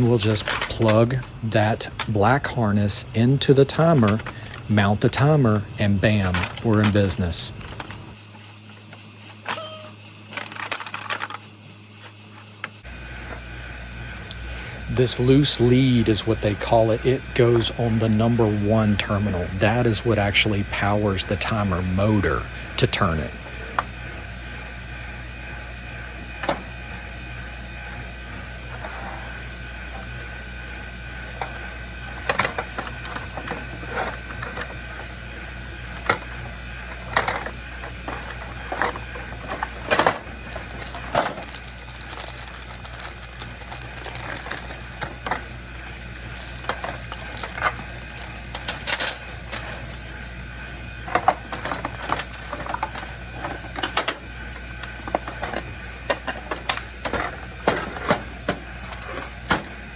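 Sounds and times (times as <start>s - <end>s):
clicks and rattles of plastic parts: 0.0s - 8.2s, 10.3s - 11.6s, 26.4s - 26.6s, 31.4s - 35.1s, 35.8s - 50.2s, 51.0s - 59.9s
steady hum with high whine: 0.0s - 59.9s.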